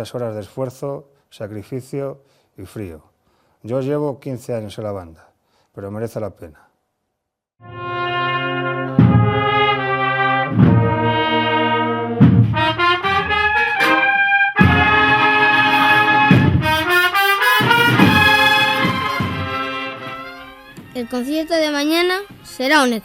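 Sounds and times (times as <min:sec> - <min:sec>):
brass chords: 0:07.6 - 0:21.2
drum strokes: 0:08.8 - 0:11.3, 0:12.1 - 0:20.2.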